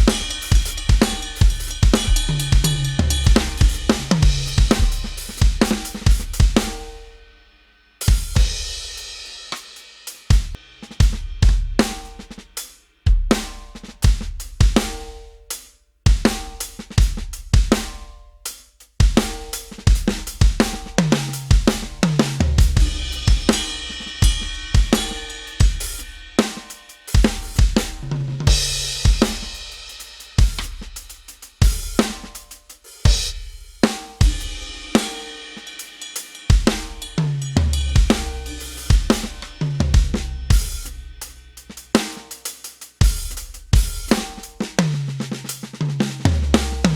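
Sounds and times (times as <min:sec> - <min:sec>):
crash cymbals ringing: 0:00.0 - 0:05.9, 0:22.8 - 0:28.0, 0:34.3 - 0:39.6
drum kit groove: 0:00.0 - 0:46.9.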